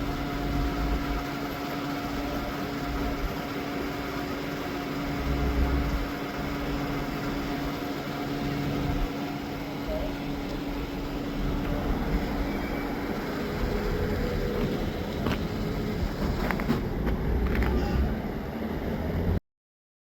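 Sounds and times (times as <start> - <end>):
car engine rumble from inside: 9.9 - 19.4.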